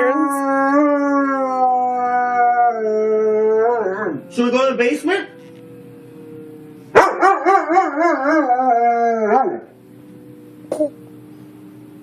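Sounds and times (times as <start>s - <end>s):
dog howling: 0.0s - 4.5s, 6.2s - 9.8s.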